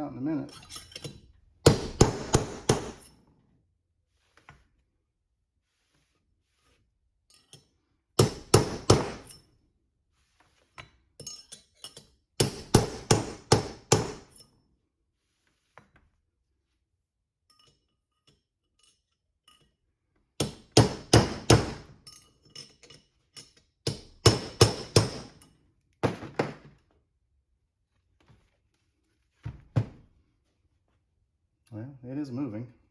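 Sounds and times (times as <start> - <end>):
hammer striking steel: 1.7 - 3.1, 8.2 - 9.4, 12.4 - 14.3, 23.9 - 25.4.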